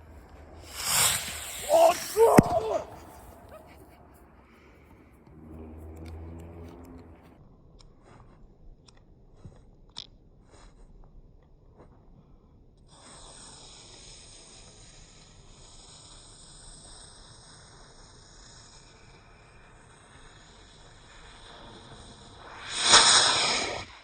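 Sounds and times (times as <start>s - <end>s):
firework hissing: 0.0s - 3.8s, 13.0s - 24.0s
firework burst: 0.6s - 3.6s, 22.1s - 24.0s.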